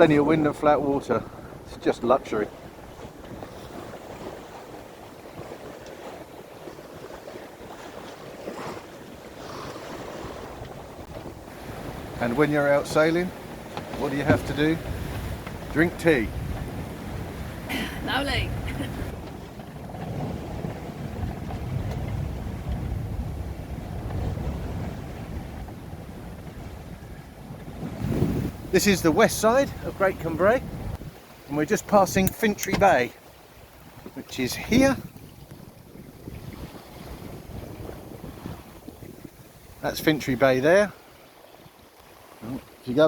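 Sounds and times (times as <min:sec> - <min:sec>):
wind on microphone: 0:00.0 - 0:40.3
water rushing along a hull: 0:00.0 - 0:43.0.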